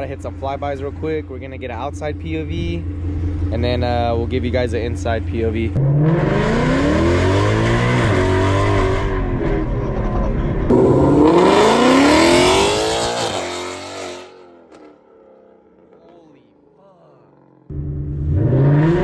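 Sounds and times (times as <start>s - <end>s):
car accelerating past: 10.7s - 15.0s.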